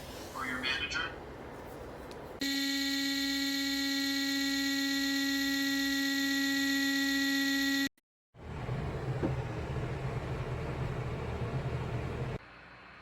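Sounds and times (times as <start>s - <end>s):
steady electric buzz: 2.4s - 7.9s.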